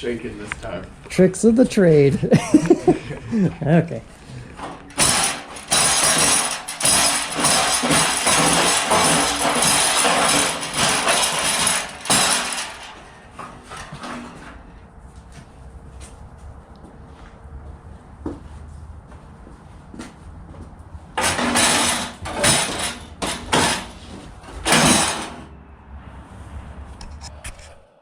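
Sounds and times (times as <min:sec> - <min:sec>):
car body rattling and jingling: 0:04.2 - 0:14.7, 0:21.2 - 0:25.5.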